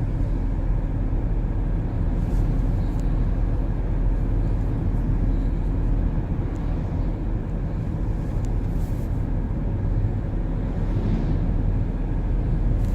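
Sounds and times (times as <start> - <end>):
car engine and road noise: 0.0 - 12.9.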